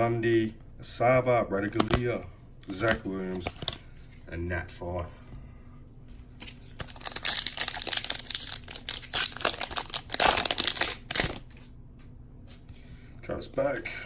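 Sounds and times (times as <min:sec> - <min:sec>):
foil wrapper tearing and crinkling: 0:06.4 - 0:11.5.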